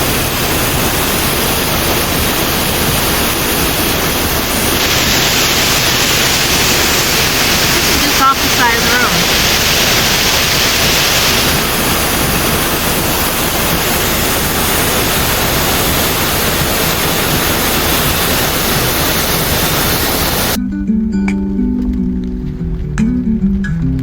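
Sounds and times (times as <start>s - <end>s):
fast-flowing water rushing: 0.0s - 20.6s
guitar music: 20.6s - 24.0s.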